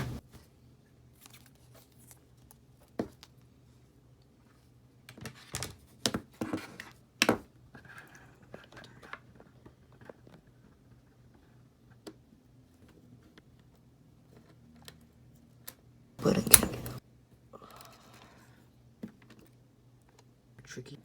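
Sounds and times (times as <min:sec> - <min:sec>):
tools and phone parts clicking: 0:16.2 - 0:17.0.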